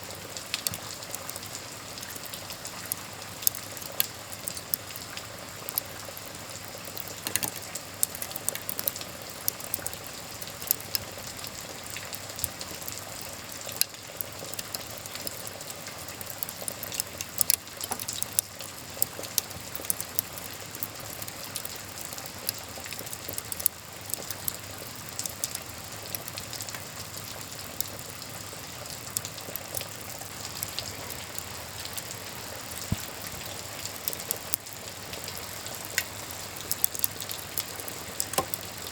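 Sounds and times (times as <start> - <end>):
wood fire crackling and popping: 0.1 - 38.9
rain hissing: 29.6 - 38.9.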